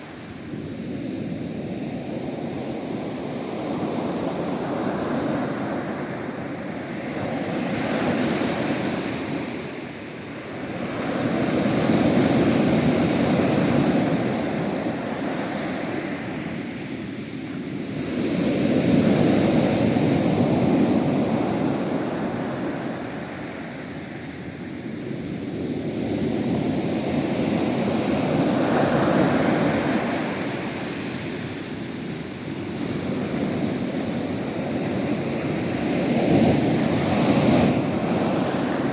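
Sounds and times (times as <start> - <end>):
sea waves breaking on shore: 0.0 - 38.9.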